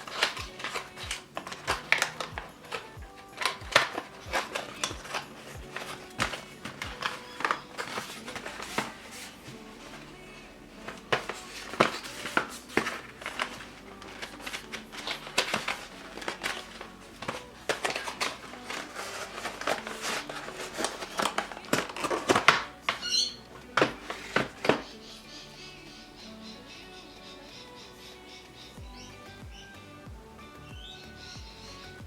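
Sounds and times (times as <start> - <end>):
packaging crinkling and rustling: 0.0 - 25.0
faint background music: 0.0 - 32.0.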